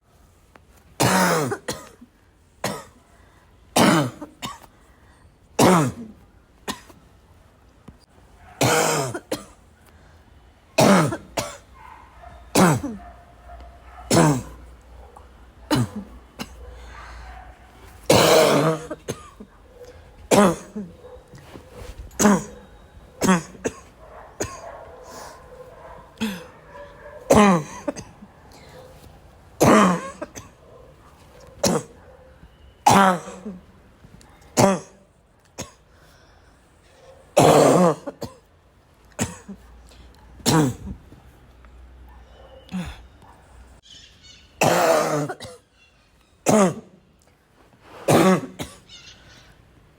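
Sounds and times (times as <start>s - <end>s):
person coughing harshly: 1.0s - 3.0s, 3.8s - 4.7s, 5.6s - 7.0s, 8.6s - 9.6s, 10.8s - 11.7s, 12.6s - 13.1s, 14.1s - 14.7s, 15.7s - 16.7s, 18.1s - 19.6s, 20.3s - 21.0s, 22.1s - 25.4s, 26.2s - 28.3s, 29.6s - 30.6s, 31.6s - 32.0s, 32.9s - 33.7s, 34.6s - 35.0s, 37.4s - 38.5s, 39.2s - 39.7s, 40.4s - 41.0s, 44.6s - 45.7s, 46.4s - 47.0s, 48.0s - 49.0s.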